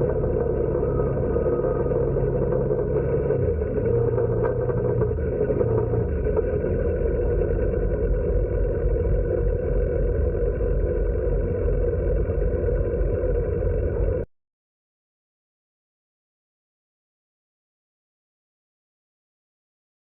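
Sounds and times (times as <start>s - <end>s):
atv engine running: 0.0s - 14.2s.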